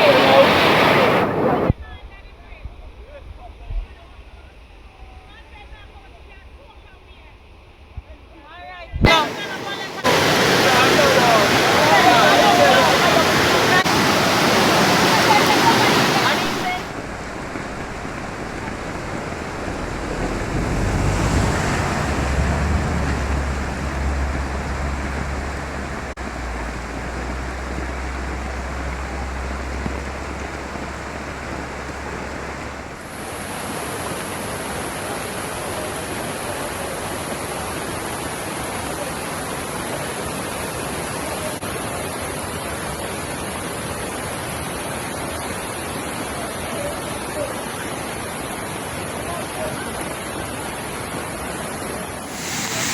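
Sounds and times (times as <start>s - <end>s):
hurricane wind and water hiss: 0.0s - 52.9s
low rumble: 16.8s - 33.0s.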